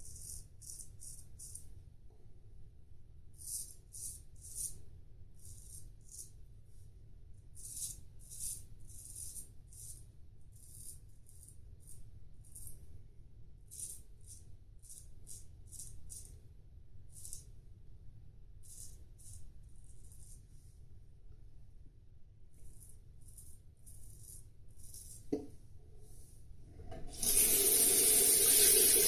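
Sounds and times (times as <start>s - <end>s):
razor rasping through stubble: 22.7s - 25.3s.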